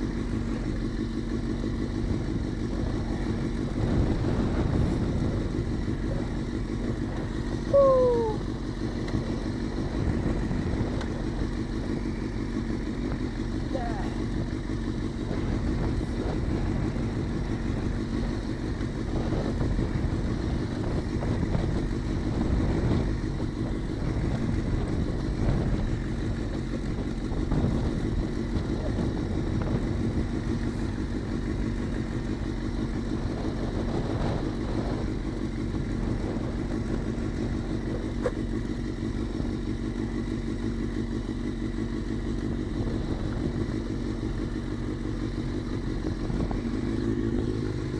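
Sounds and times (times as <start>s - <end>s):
motorcycle engine running: 0.0s - 47.9s.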